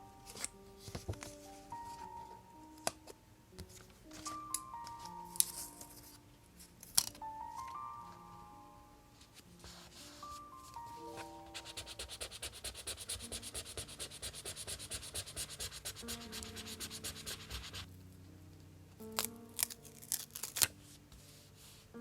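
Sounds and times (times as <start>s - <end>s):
paper rubbing back and forth: 11.5s - 17.8s.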